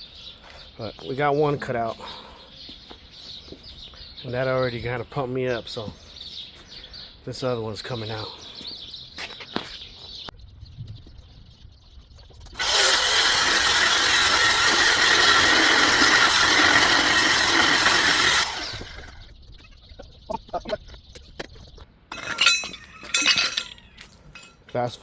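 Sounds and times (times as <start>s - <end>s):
reciprocating saw cutting metal: 12.6s - 19.2s.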